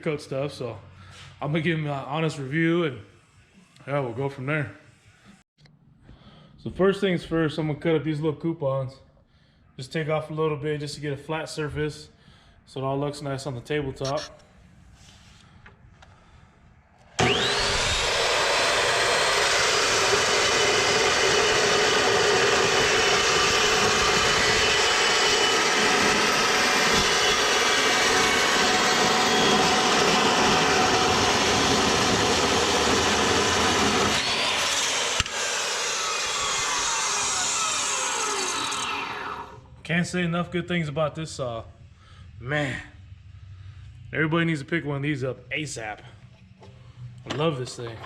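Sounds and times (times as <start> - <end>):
saw blade winding down whine: 17.0 - 39.7
chop saw grinding through metal: 17.1 - 39.6.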